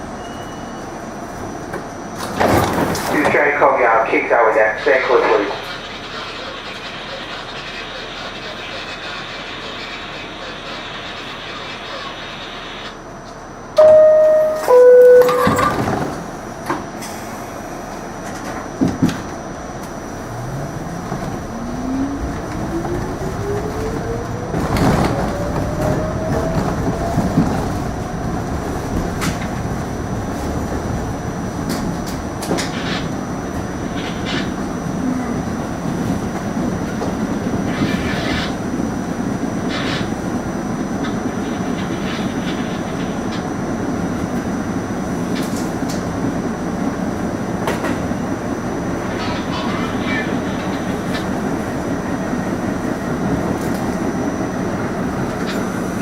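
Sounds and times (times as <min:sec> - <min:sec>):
train running rumble: 0:00.0 - 0:56.0
train motors whining: 0:14.7 - 0:40.2.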